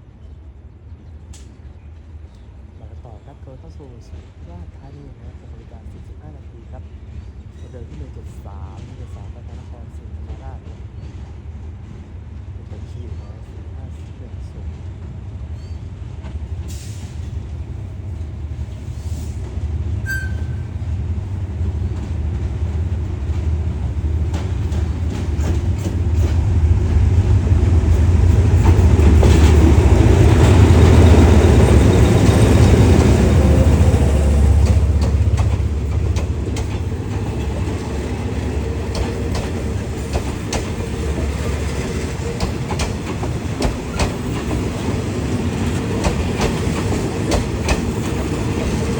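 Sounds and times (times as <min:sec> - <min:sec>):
train engine rumble: 0:00.0 - 0:48.9
wheels clicking over rail joints: 0:21.9 - 0:48.9.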